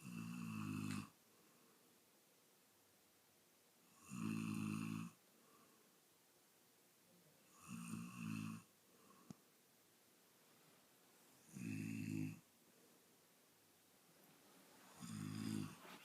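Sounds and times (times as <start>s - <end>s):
man snoring loudly: 0.0s - 1.1s, 4.0s - 5.2s, 7.5s - 8.7s, 11.4s - 12.4s, 15.0s - 15.8s.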